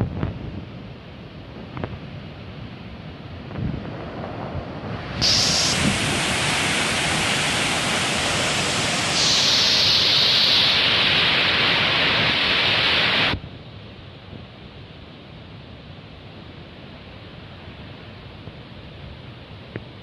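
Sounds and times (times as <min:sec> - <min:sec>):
waterfall rushing: 0:04.0 - 0:13.4.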